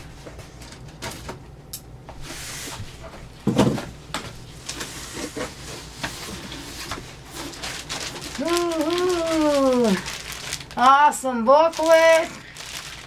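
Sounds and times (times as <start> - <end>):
packaging rustling in a box: 5.5 - 13.0.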